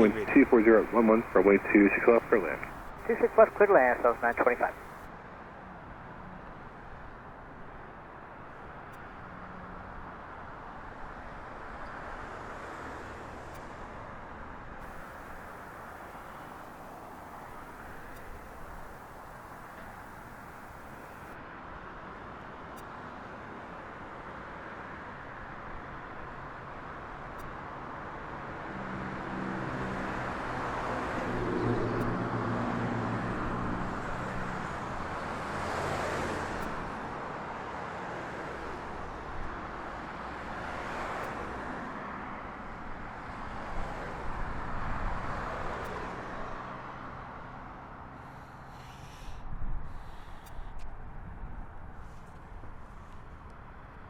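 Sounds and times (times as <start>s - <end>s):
jet airliner engines roaring: 0.0s - 5.0s, 14.8s - 21.3s.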